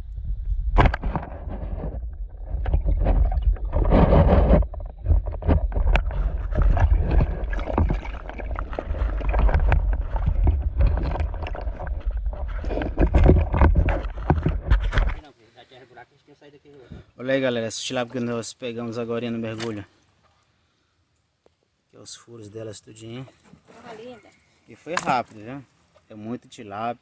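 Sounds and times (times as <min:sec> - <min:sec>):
water sloshing against microphone: 0:00.8 - 0:15.3
rushing splash: 0:06.1 - 0:12.4.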